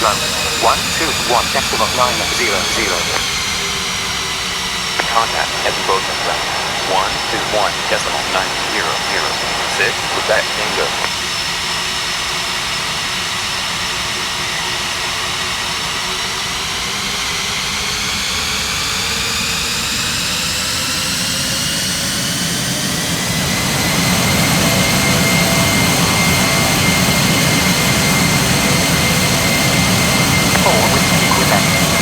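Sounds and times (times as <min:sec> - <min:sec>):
jet engines spooling up: 0:00.0 - 0:03.6, 0:05.0 - 0:11.1, 0:22.9 - 0:32.0.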